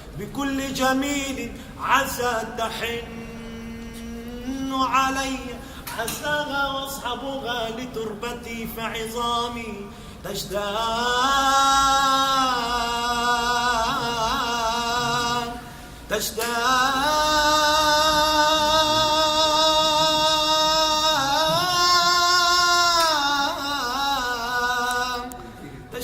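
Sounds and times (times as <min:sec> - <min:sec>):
man singing in chanted style: 0:00.2 - 0:26.0
singer breathing: 0:05.6 - 0:05.9, 0:09.9 - 0:10.3, 0:15.6 - 0:16.1.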